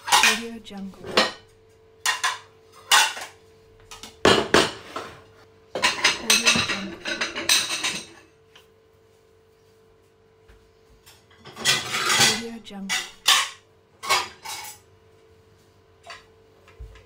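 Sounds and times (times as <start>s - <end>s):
dishes and cutlery clattering: 0.0s - 8.4s, 11.0s - 14.9s.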